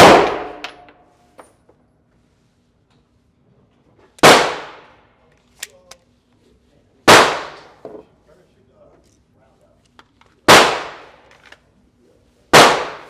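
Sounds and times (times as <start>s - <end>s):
pistol shots with room echo: 0.0s - 1.0s, 4.2s - 5.0s, 7.0s - 7.8s, 10.5s - 11.3s, 12.5s - 13.0s.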